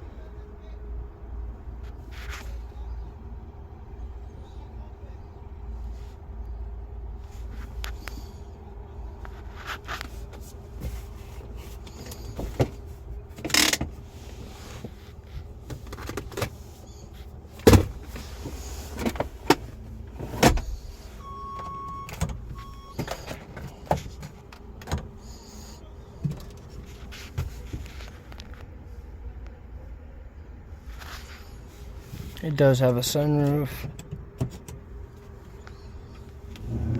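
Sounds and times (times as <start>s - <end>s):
car doors and controls clicking: 17.6s - 25.2s.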